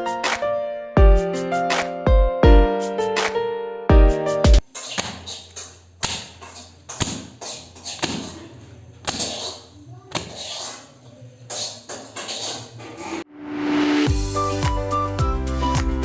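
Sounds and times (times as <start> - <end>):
background music: 0.0 - 4.6, 13.3 - 16.0.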